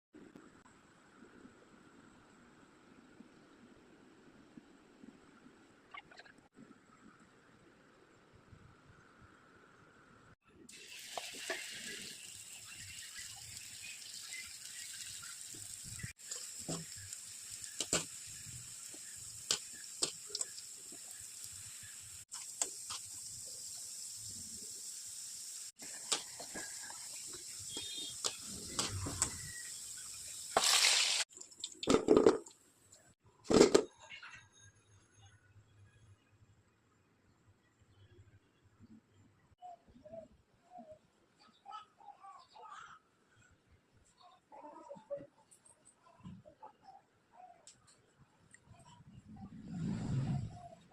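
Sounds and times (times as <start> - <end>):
watery hiss: 10.7 - 31.3.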